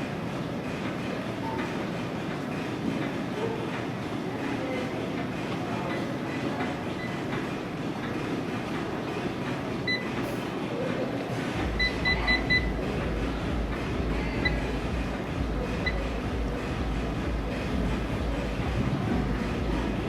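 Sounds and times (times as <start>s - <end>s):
exercise machines: 0.0s - 20.0s
short electronic beeps: 9.9s - 10.2s, 11.8s - 12.8s, 15.8s - 16.1s.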